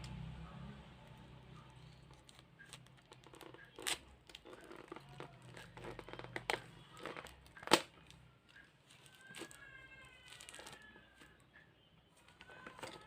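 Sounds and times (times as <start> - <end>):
packaging crinkling and rustling: 1.7 - 11.4, 12.2 - 13.0
packaging clicks: 1.8 - 11.4.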